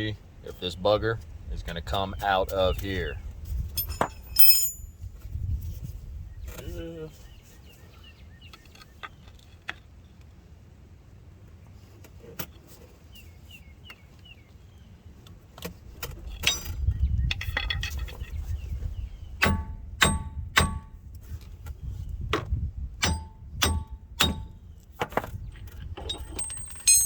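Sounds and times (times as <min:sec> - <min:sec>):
hammer striking metal hub: 0:03.8 - 0:04.9, 0:19.4 - 0:21.0, 0:23.0 - 0:24.6, 0:26.1 - 0:27.0
metal clatter: 0:03.8 - 0:04.9, 0:26.0 - 0:27.0.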